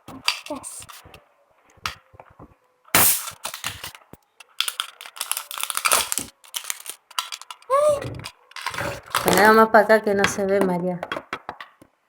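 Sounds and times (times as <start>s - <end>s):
small plastic pieces clattering: 0.0s - 1.1s, 3.2s - 9.6s
plastic scrape: 0.1s - 1.2s, 3.3s - 9.6s.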